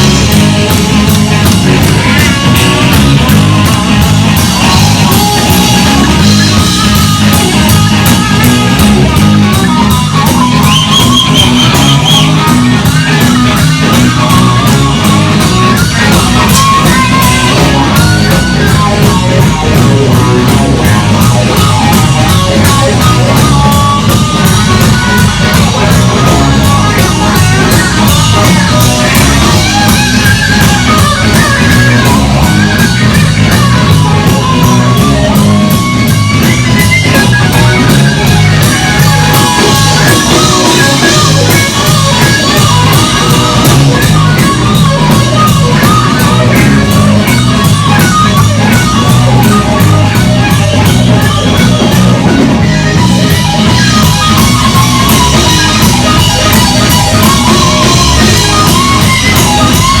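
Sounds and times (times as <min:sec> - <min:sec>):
bass: 0:00.0 - 1:00.0
electric guitar lead: 0:00.0 - 1:00.0
live rock band playing: 0:00.0 - 1:00.0
steady drum beat: 0:00.0 - 1:00.0.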